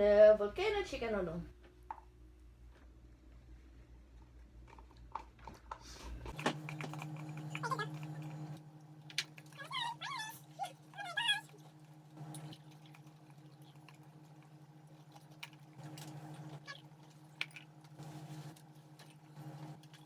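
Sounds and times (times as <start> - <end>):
steady low hum: 5.8 - 20.0
animal whining: 7.5 - 8.5, 9.5 - 11.8, 16.4 - 17.0.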